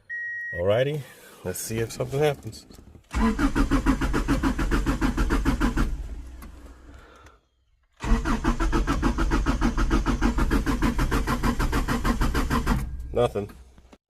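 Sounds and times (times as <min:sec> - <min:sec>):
engine cranking by starter: 0:03.0 - 0:07.3, 0:07.9 - 0:13.2.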